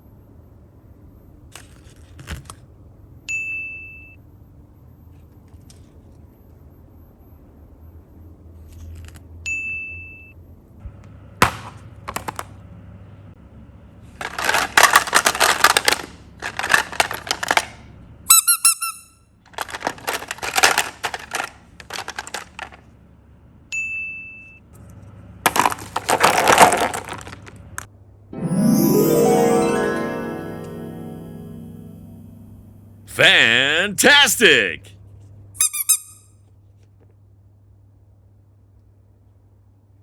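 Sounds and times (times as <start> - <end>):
sparkling chime: 28.4 - 33.0.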